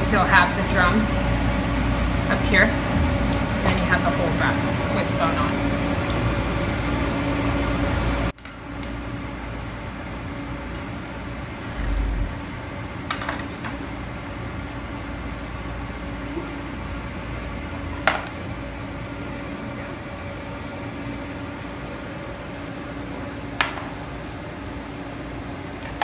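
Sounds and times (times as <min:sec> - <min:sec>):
steady background hum: 0:11.1 - 0:13.2.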